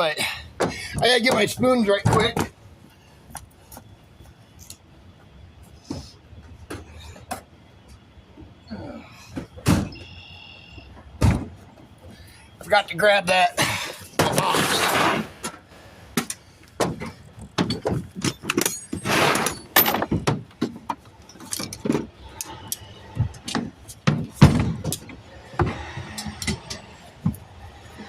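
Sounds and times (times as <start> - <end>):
short scraping rush: 14.4 - 15.5
hand tools clanking: 17.0 - 27.0.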